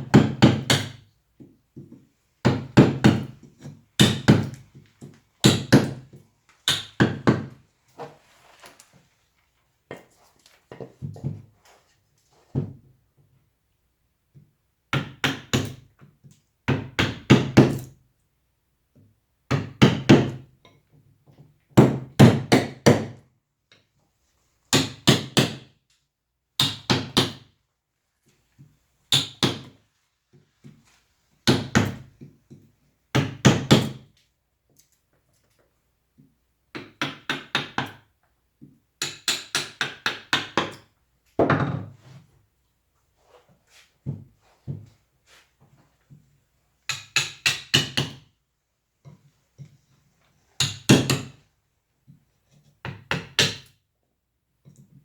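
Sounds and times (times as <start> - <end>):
mallet tapping chisel into wood: 39.0 - 40.8.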